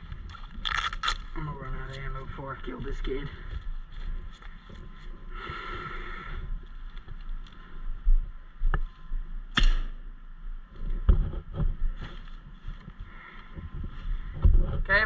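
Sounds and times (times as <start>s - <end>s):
loud sharp snap: 9.5s - 9.9s
thumps and rustling of movement: 10.7s - 14.9s.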